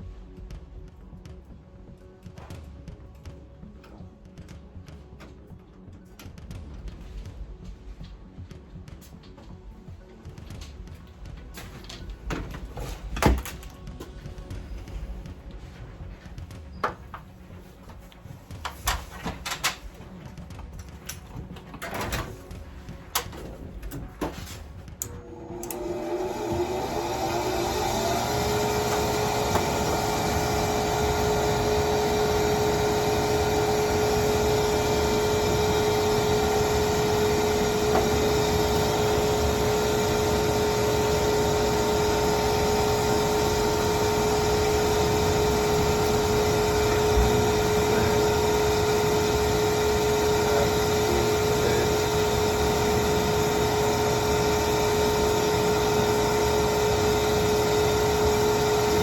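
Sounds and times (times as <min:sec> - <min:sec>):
machine motor humming: 0:24.8 - 0:59.0.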